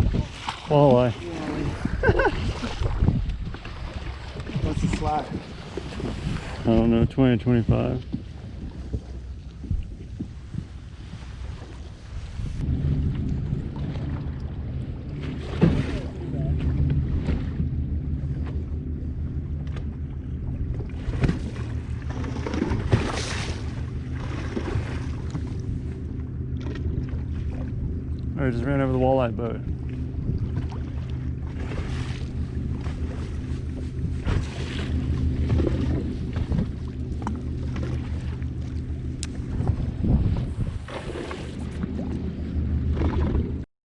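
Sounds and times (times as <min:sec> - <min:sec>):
wind on microphone: 0:00.0 - 0:17.7, 0:29.4 - 0:43.6
outboard motor humming: 0:00.0 - 0:43.7
water splashing against hull: 0:00.0 - 0:43.7.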